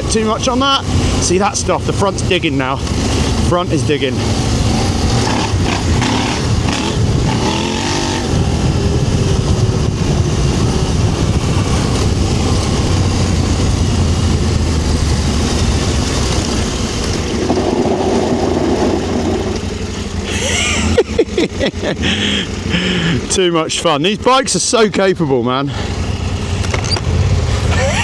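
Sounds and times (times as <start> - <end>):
motorcycle engine revving: 0.0 - 24.6, 25.7 - 28.0
wind rushing: 2.3 - 19.8.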